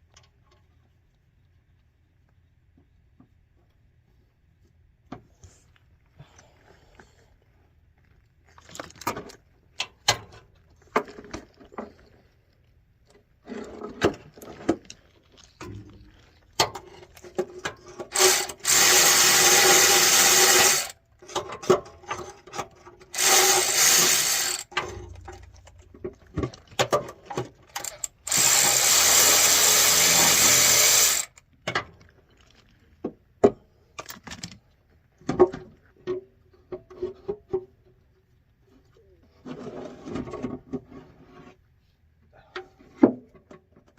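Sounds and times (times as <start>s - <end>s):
handheld power tool running: 18.1s - 21.0s, 23.1s - 25.0s, 27.7s - 31.4s.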